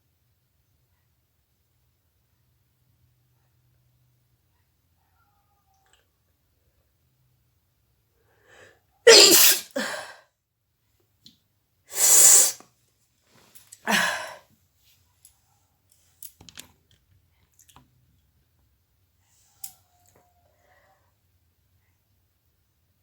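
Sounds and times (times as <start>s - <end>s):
woman sneezing: 9.1s - 10.1s, 11.9s - 12.6s, 13.9s - 14.4s.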